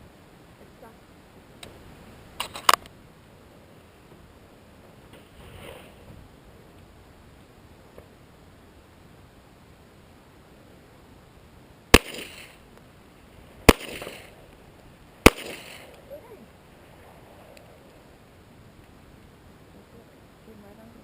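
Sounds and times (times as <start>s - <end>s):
pistol shots with echo: 11.9s - 12.6s, 13.7s - 14.4s, 15.2s - 16.0s.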